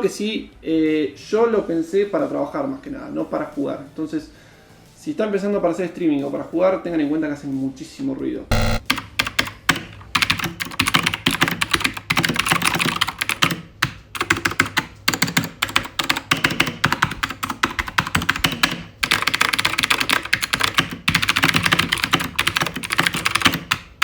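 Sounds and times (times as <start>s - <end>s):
mechanical keyboard clicking: 8.5s - 24.0s.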